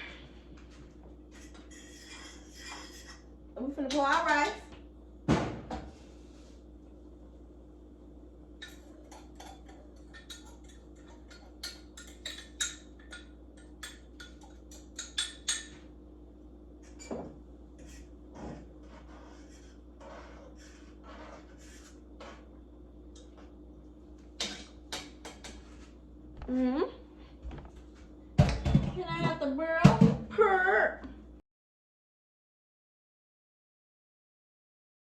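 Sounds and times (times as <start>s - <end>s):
faint steady hum: 0.0s - 31.4s
utensil clinking against pot: 8.6s - 15.8s.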